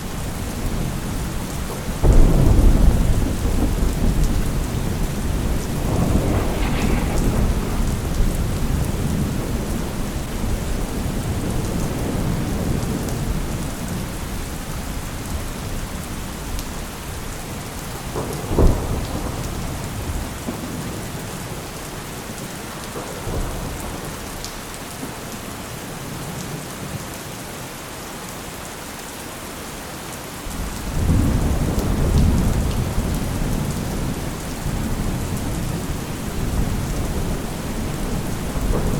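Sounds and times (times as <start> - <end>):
rain hissing: 0.0 - 20.7
rolling thunder: 0.0 - 21.7, 30.6 - 38.9
sharp thunderclap: 1.9 - 13.6, 18.0 - 21.0, 30.8 - 38.9.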